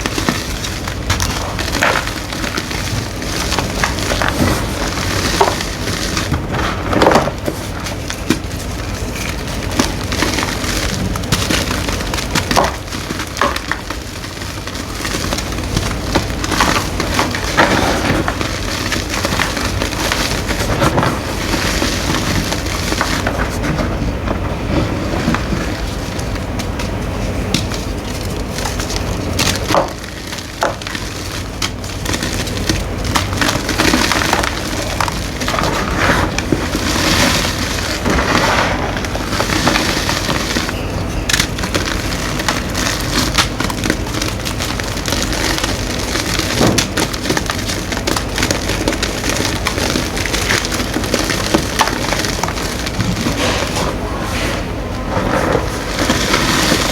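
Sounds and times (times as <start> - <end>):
chalk crunching and crackling: 0.0 - 56.9.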